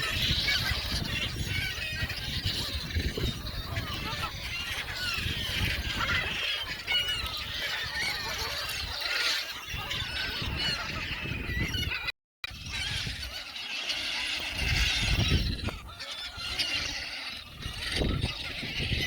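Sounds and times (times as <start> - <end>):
flock of birds squealing: 0.0 - 19.0.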